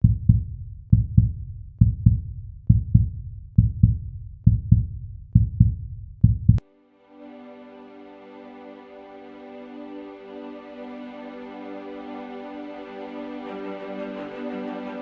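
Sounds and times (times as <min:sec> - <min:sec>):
heartbeat thumps: 0:00.0 - 0:06.6
soft sustained music: 0:06.6 - 0:15.0.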